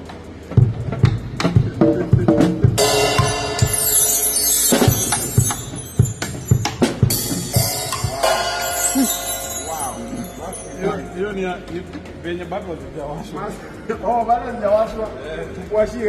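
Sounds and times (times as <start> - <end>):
cymbal crashes: 2.6 - 10.9.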